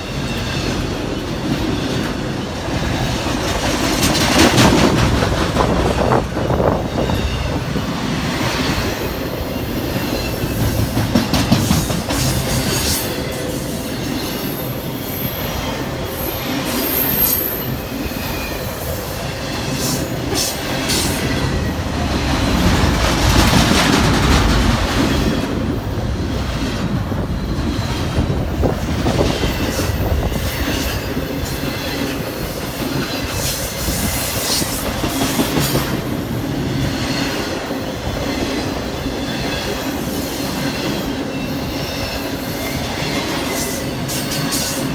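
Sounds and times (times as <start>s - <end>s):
train wheels rumbling on rail: 0.0s - 44.9s
clacking over rail joints: 0.3s - 9.0s, 9.9s - 13.0s, 19.8s - 25.6s
high wheel squeal: 11.7s - 21.8s.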